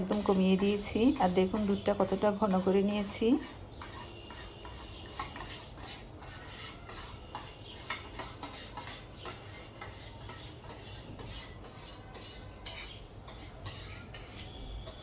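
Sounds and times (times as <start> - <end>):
spoon scraping a bowl: 0.0 - 15.0.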